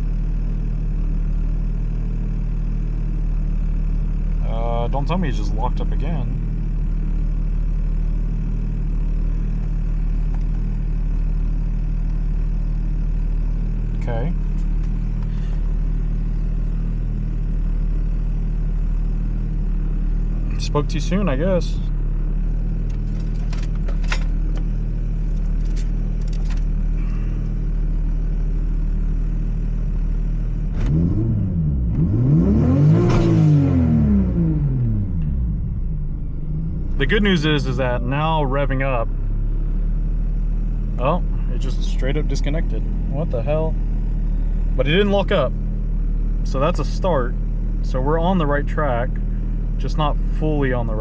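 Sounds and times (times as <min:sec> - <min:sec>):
car engine and road noise: 0:00.0 - 0:51.0.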